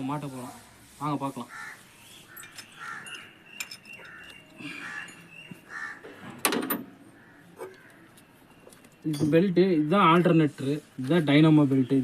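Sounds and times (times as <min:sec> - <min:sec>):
metal tools clinking: 0:02.3 - 0:05.3, 0:08.7 - 0:09.6.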